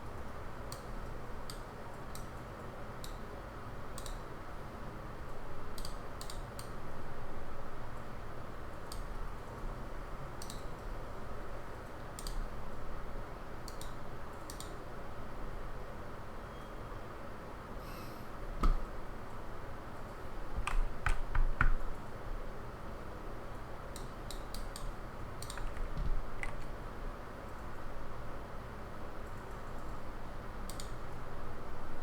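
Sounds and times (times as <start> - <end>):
steady background hiss: 0.0 - 32.0
computer mouse and keyboard clicks: 10.4 - 10.8, 13.7 - 14.8, 20.6 - 22.0, 24.0 - 26.8.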